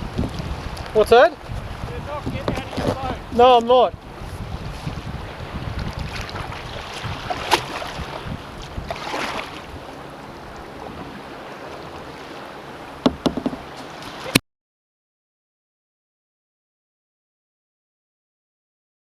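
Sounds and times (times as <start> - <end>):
water splashing around hull: 0.0 - 14.4
wind buffeting microphone: 0.0 - 14.4
sharp knocks: 13.0 - 13.7.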